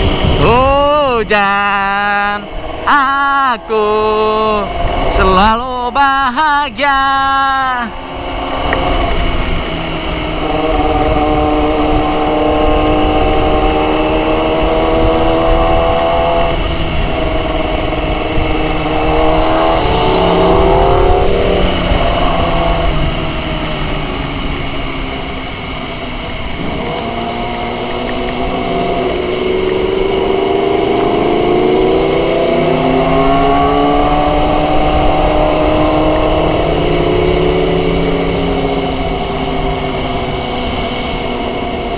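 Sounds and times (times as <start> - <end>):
motorcycle engine revving: 0.0 - 41.9
wind and heavy rain noise: 0.0 - 41.9.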